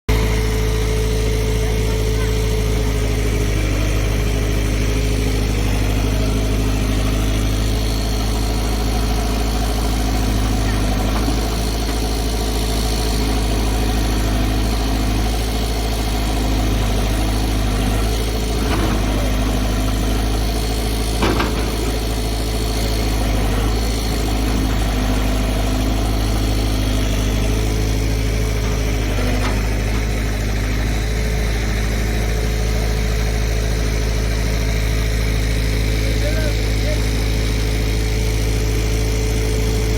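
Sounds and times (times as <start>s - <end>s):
diesel engine running: 0.0s - 39.9s
metal knocks: 21.0s - 22.2s.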